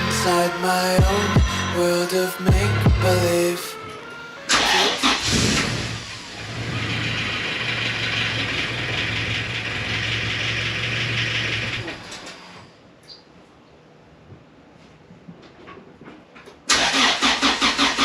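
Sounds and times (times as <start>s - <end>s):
car engine idling: 4.5s - 12.0s.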